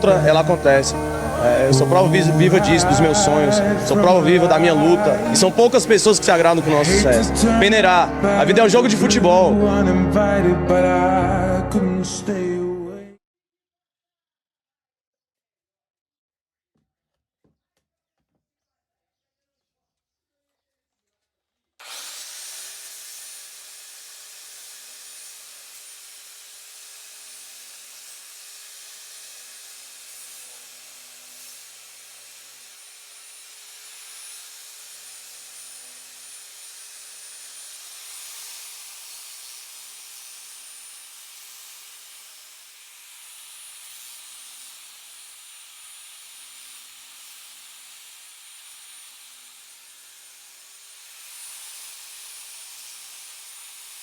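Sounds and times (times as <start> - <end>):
power tool motor whining: 0.0 - 8.6, 21.8 - 54.0.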